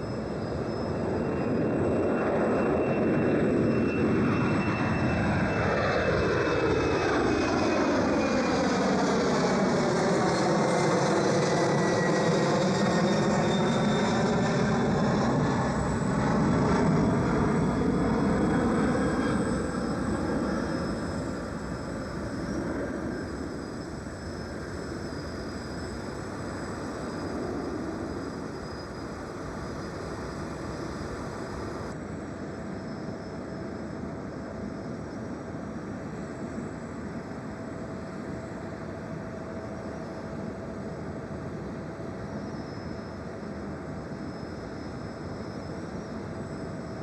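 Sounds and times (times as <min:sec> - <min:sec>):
jet aircraft passing: 0:00.0 - 0:32.4
thin high jet whine: 0:00.0 - 0:47.0.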